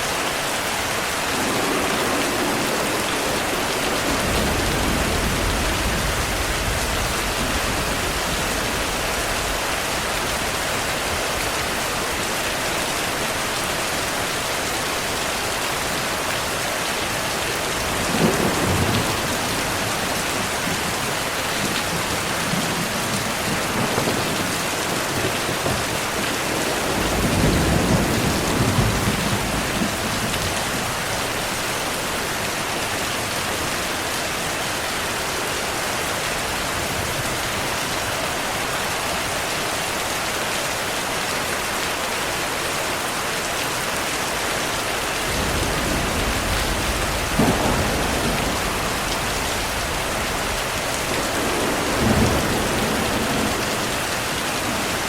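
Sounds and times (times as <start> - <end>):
rain hissing: 0.0 - 39.9, 41.6 - 55.0
thunder rumbling: 0.9 - 13.5, 17.4 - 31.5, 44.9 - 55.0.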